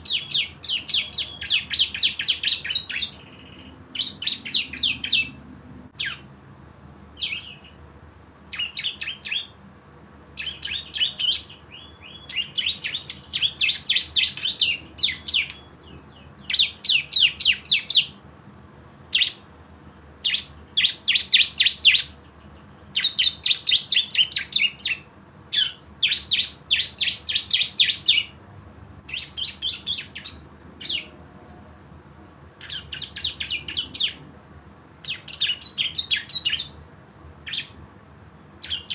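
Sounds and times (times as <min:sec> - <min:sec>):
bird rapid high chirps: 0:00.0 - 0:06.3, 0:07.2 - 0:07.9, 0:08.5 - 0:09.6, 0:10.3 - 0:18.2, 0:19.1 - 0:19.5, 0:20.2 - 0:28.4, 0:29.1 - 0:31.2, 0:32.6 - 0:34.2, 0:35.0 - 0:36.8, 0:37.4 - 0:37.8, 0:38.6 - 0:38.9.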